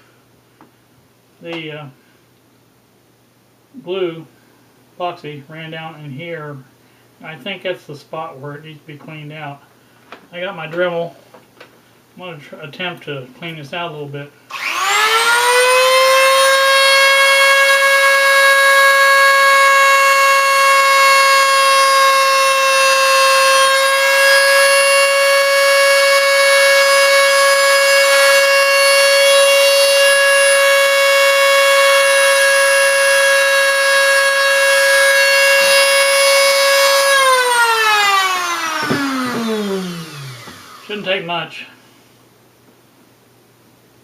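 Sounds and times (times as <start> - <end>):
rotary tool spinning down: 14.5 - 16.6, 36.9 - 41.0
rotary tool whining: 14.5 - 16.8, 17.5 - 41.1.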